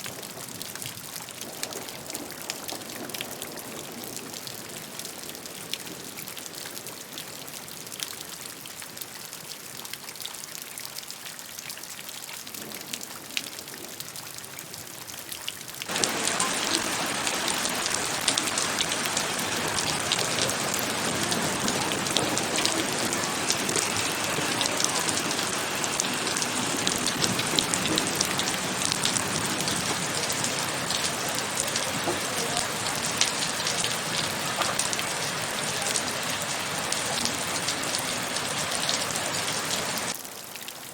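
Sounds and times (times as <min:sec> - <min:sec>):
rain falling: 0:00.0 - 0:40.9
raindrops tapping: 0:15.8 - 0:40.2.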